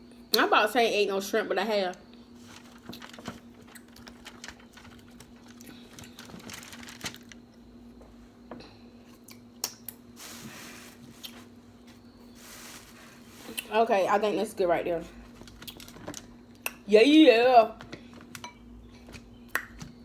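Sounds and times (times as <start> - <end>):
faint steady hum: 0.0 - 20.0
handling clicks and crinkles: 2.4 - 7.5, 15.2 - 16.4.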